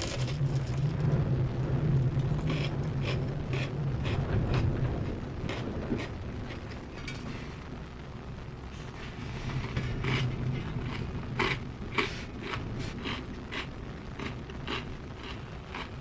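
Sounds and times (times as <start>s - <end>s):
crispbread crunching: 0.0s - 1.3s, 8.6s - 16.0s
steady low hum: 0.0s - 16.0s.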